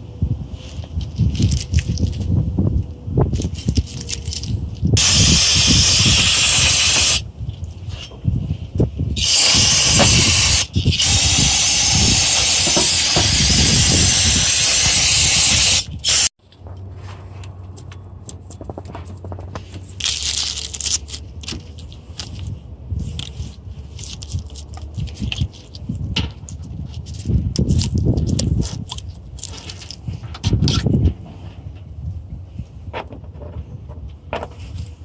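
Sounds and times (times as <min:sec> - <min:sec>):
loud spray hiss: 0:05.0 - 0:07.2, 0:09.2 - 0:16.3.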